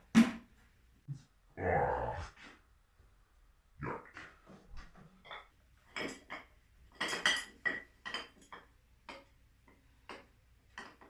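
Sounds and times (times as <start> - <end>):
metal parts and tools clinking: 5.2 - 9.4.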